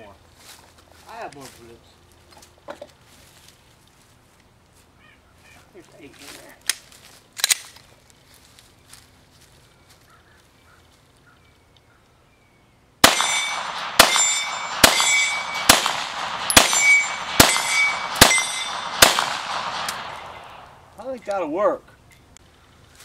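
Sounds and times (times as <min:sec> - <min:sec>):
pistol shots with ringing tail: 0:13.0 - 0:20.8.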